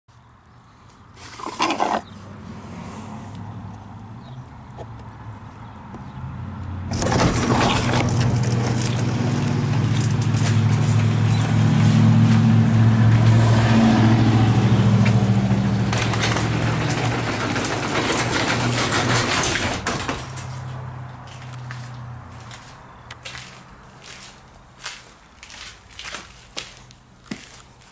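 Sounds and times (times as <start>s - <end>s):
garage door opener motor hum: 6.9s - 20.6s
door rattling along track: 6.9s - 20.8s.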